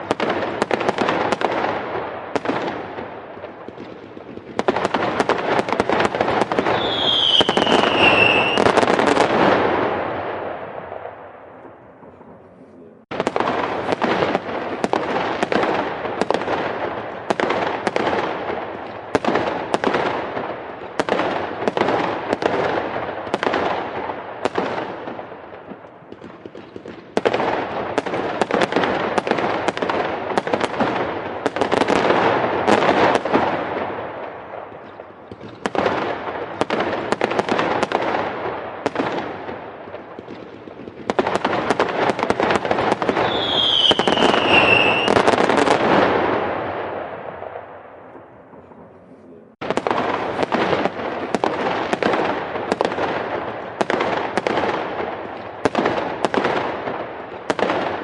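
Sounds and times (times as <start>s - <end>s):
fireworks crackling and banging: 0.0s - 58.0s
falling firework whistle: 6.6s - 9.2s, 43.0s - 45.3s.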